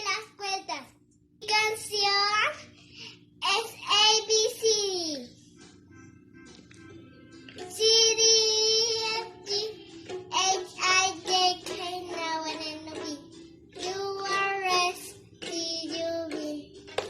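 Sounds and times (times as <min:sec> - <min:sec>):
child singing: 0:03.4 - 0:05.3, 0:07.5 - 0:16.9.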